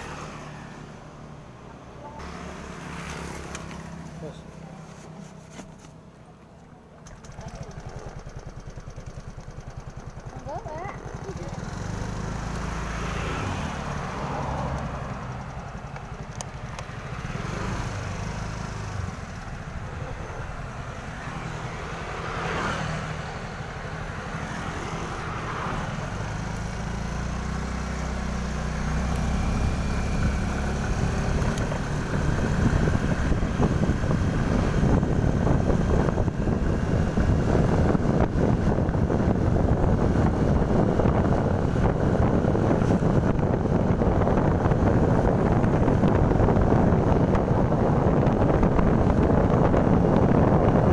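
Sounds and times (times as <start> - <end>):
motorcycle engine running: 6.7 - 50.9
wind noise on microphone: 17.2 - 50.9.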